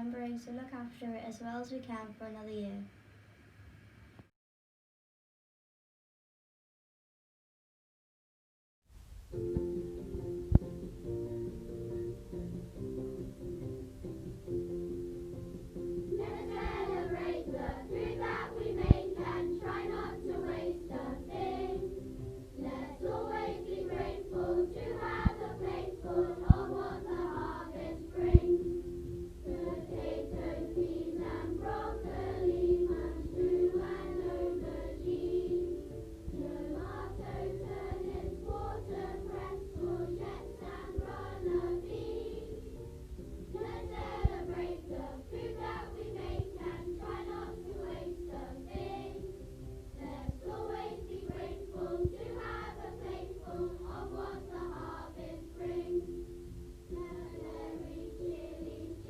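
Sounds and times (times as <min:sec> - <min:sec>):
children singing together: 0:16.1 - 0:42.8, 0:43.5 - 0:49.4, 0:50.0 - 0:56.2, 0:56.9 - 0:59.0.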